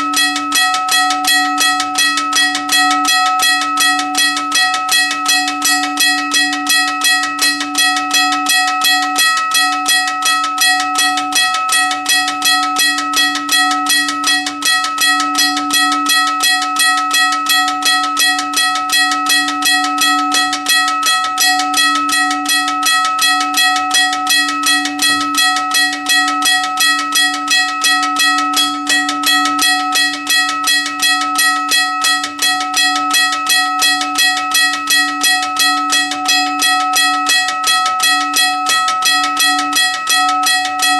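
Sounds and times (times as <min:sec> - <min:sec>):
railroad crossing bell ringing: 0:00.0 - 0:40.9.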